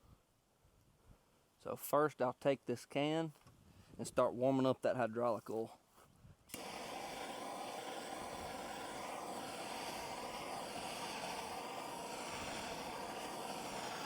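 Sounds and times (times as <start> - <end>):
torch flame hissing: 6.5 - 14.0.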